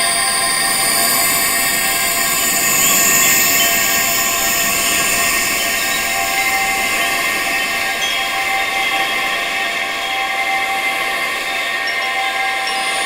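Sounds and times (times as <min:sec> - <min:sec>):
wind chimes ringing: 0:00.0 - 0:13.0.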